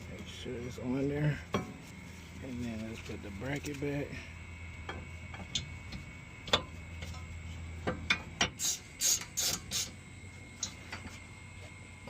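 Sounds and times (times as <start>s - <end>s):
ratchet wrench strokes: 8.5s - 9.9s.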